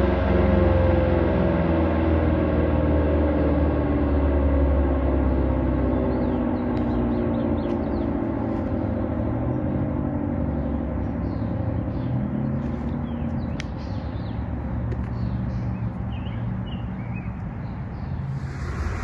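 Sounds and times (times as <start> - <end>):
low outdoor rumble: 1.5 - 19.0
birds chirping: 5.9 - 19.0.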